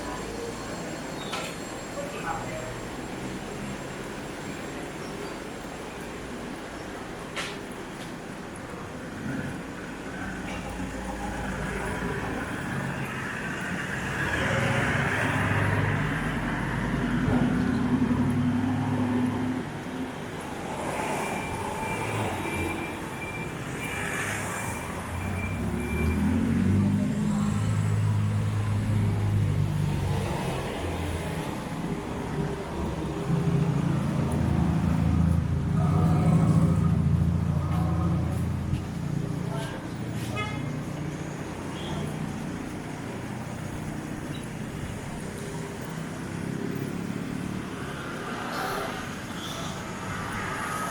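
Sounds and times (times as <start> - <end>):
vehicle passing with tyre noise: 9.1 - 50.9.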